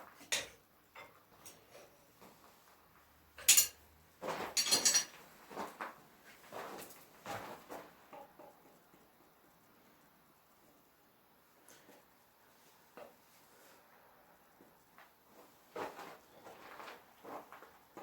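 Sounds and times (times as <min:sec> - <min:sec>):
metal objects clinking and clattering: 0:03.4 - 0:05.2.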